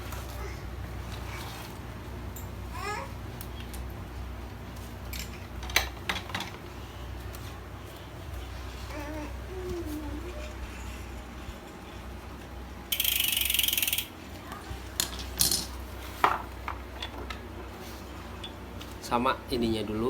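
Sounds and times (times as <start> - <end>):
bicycle pedal parts clicking: 12.9 - 14.2
rapid ratcheting clicks: 12.9 - 14.2.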